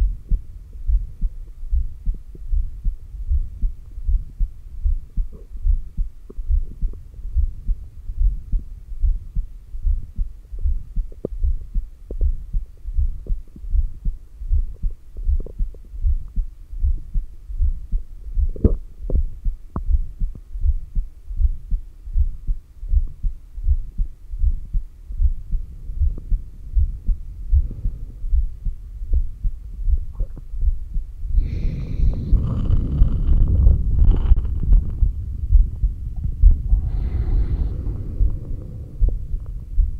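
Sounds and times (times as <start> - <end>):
heartbeat thumps: 0.0 - 39.9
rushing noise: 36.2 - 39.9.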